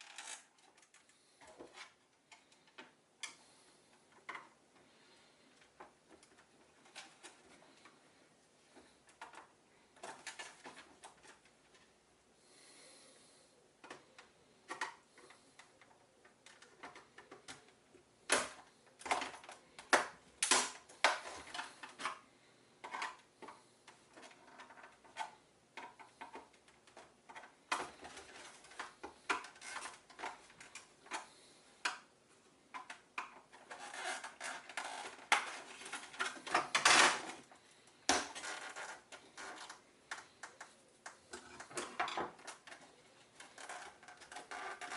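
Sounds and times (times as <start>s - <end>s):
plastic clatter: 13.8s - 22.2s, 32.7s - 44.9s.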